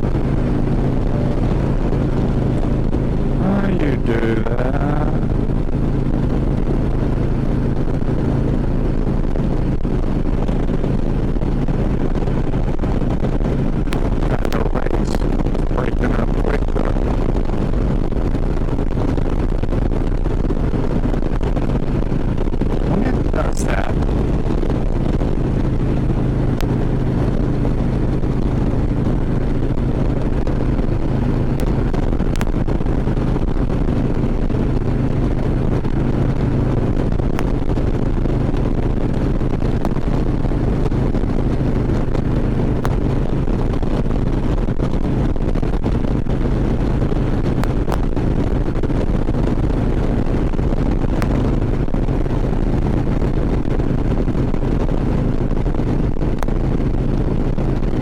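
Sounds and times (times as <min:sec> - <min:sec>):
motorcycle engine cruising: 0:00.0 - 0:58.0
wind rushing over microphone: 0:00.0 - 0:58.0.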